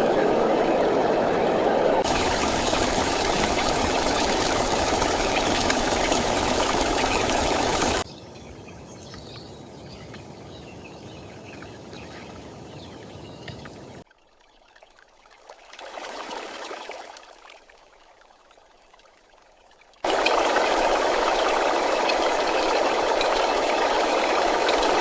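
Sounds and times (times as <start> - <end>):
heavy rain: 0.0 - 8.0, 20.0 - 25.0
light rain patter: 0.0 - 8.0, 19.4 - 25.0
faint drips: 2.0 - 8.0, 20.0 - 25.0.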